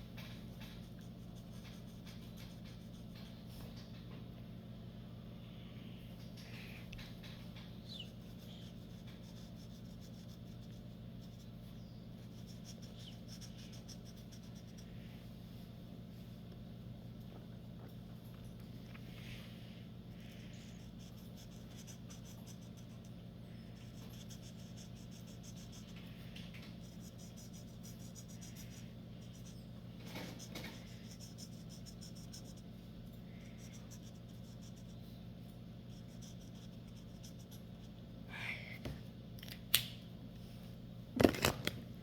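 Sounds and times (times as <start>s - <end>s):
steady low hum: 0.0s - 42.0s
marker pen scratching on paper: 0.2s - 3.3s, 7.9s - 11.5s, 12.2s - 14.9s, 23.8s - 26.0s, 35.9s - 37.7s.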